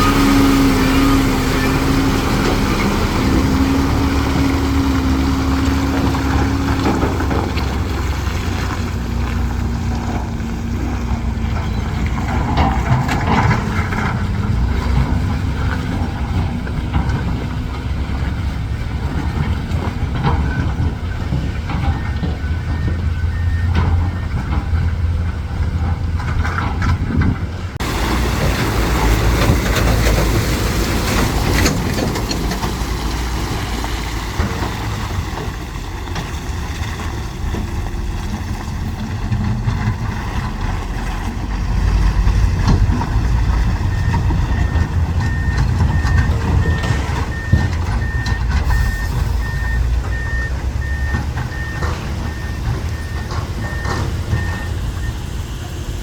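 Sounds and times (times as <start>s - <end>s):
heavy diesel machinery engines: 0.0s - 56.0s
faint reversing beeper: 43.9s - 55.3s.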